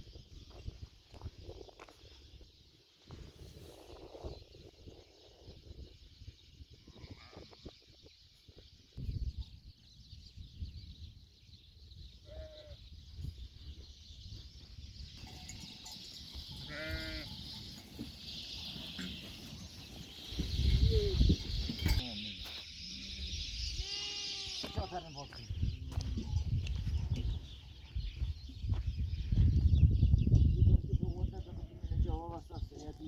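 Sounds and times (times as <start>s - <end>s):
livestock bleating: 6.9s - 7.6s, 12.2s - 12.8s, 16.6s - 17.4s, 23.8s - 25.1s.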